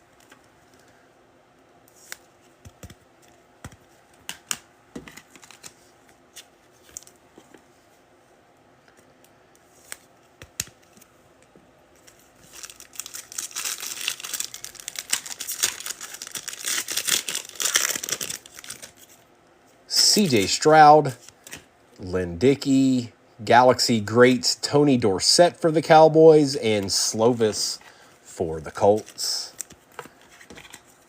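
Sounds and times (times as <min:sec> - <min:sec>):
foil wrapper crinkling and tearing: 0:12.2 - 0:19.2.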